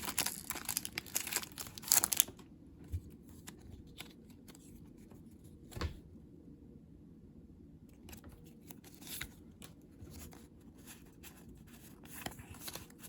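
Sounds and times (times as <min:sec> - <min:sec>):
foil wrapper crinkling and tearing: 0:00.0 - 0:02.4.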